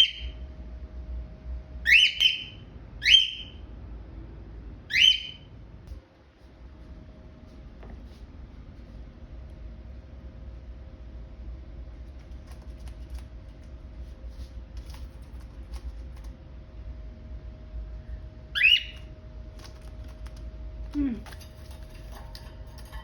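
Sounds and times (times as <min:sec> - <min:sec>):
cockatiel squawk: 0:01.9 - 0:03.5, 0:18.6 - 0:19.0.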